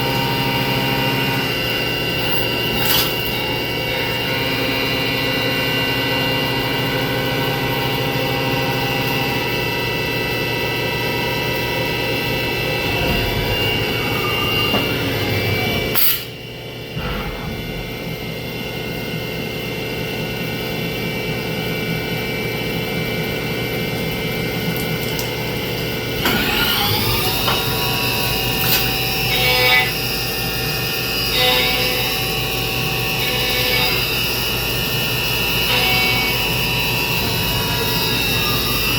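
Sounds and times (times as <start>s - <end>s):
milling machine cutting metal: 12.1s - 18.6s, 26.2s - 38.9s.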